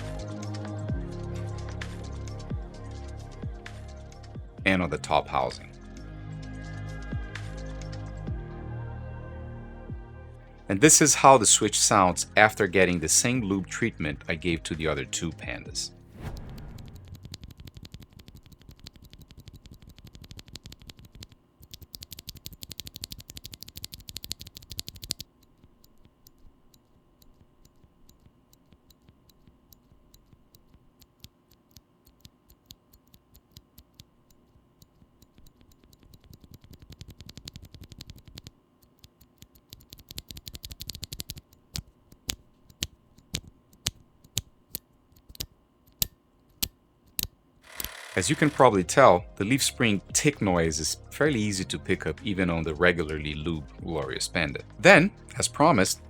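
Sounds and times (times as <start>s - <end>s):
mechanical keyboard typing: 17.1s - 44.5s, 47.7s - 48.9s.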